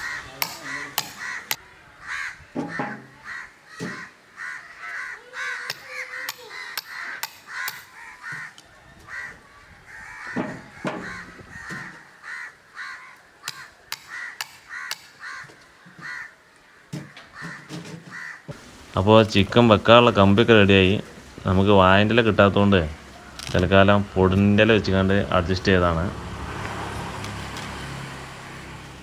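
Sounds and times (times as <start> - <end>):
birds calling in rough calls: 0.0 - 26.5.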